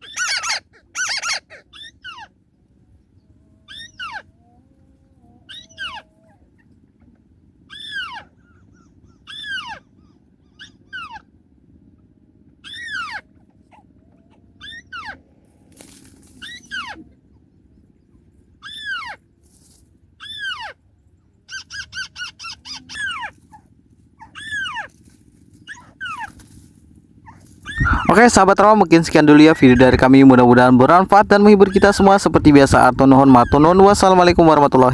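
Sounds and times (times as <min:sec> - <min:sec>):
bird calls from phone: 0:00.0 - 0:02.3, 0:27.7 - 0:34.9.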